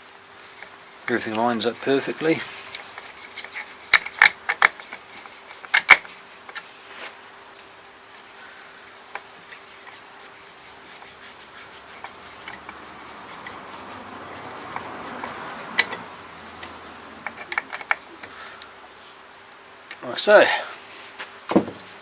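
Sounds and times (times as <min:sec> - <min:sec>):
rifle handling rubbing and scraping: 0:00.4 - 0:07.2, 0:08.1 - 0:18.3.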